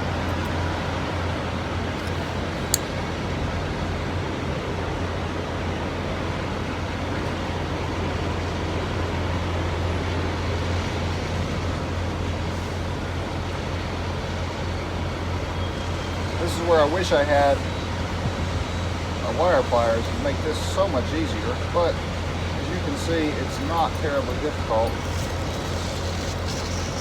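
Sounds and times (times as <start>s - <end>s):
road noise: 0.0s - 27.0s
vehicle engine rumble: 0.0s - 27.0s.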